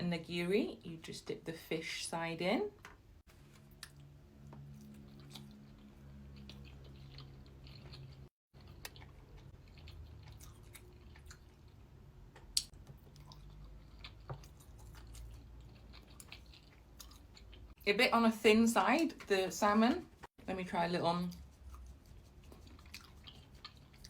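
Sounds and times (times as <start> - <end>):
chewing with wet mouth sounds: 3.6 - 17.8, 21.2 - 24.0.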